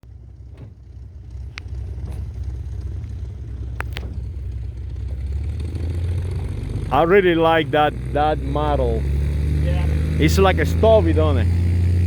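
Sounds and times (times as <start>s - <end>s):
low steady rumble: 0.0s - 12.0s.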